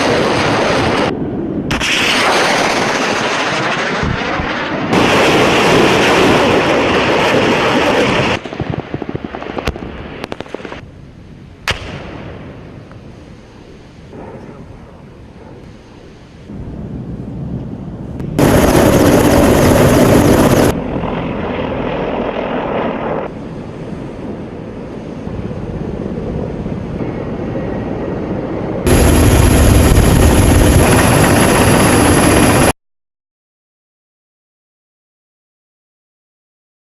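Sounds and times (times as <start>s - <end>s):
aircraft engines running: 0.0s - 11.7s, 12.3s - 32.7s
high steady engine whine: 13.6s - 32.7s.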